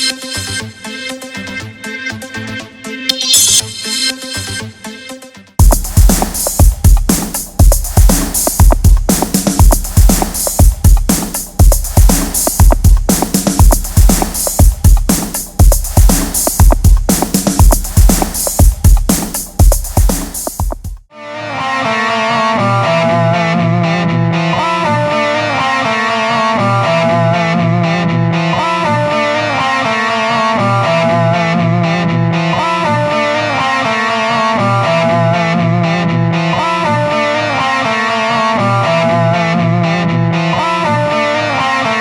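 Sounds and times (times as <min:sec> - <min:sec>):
loud electronic beat: 0:03.1 - 0:04.4, 0:05.6 - 0:21.1.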